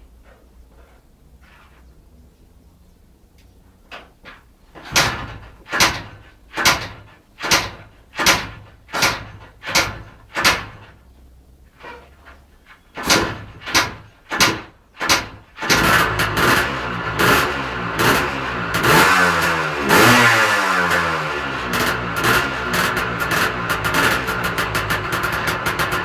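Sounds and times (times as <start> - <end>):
motorcycle kick-start kicks: 11.8 - 26.0
motorcycle engine running: 15.7 - 26.0.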